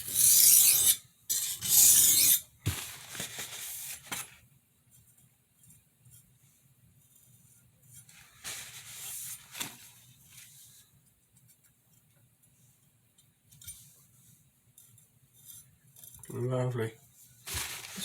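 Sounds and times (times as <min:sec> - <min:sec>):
knife scraping on sharpening stone: 0:00.0 - 0:02.5.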